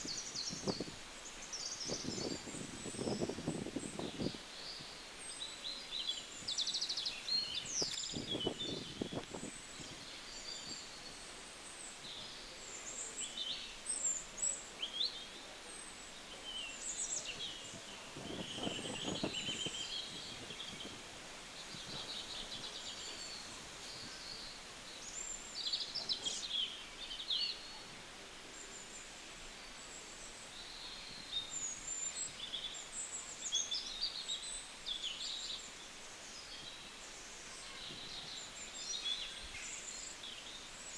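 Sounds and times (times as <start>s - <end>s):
steady background hiss: 0.0s - 40.9s
birds chirping and trilling: 5.5s - 10.9s, 16.4s - 21.0s.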